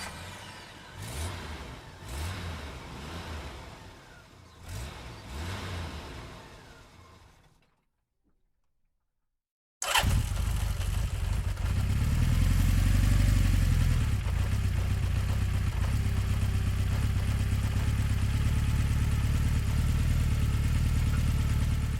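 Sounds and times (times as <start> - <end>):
combustion engine starting and idling: 0.0 - 2.4, 9.8 - 21.9.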